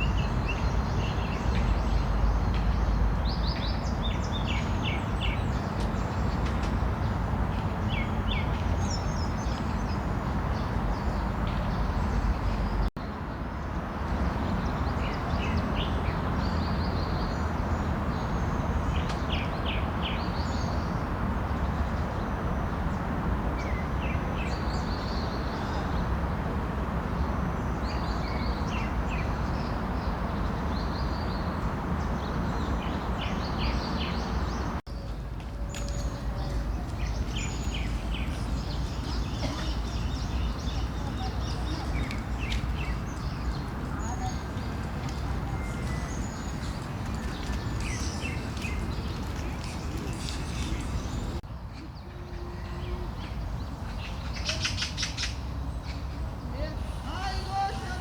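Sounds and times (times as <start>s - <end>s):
small birds chirping: 27.6s - 58.0s.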